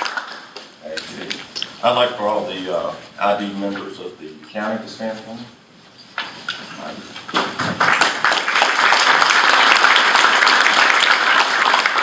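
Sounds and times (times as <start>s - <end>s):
audience applauding: 0.0s - 0.6s, 7.3s - 12.0s.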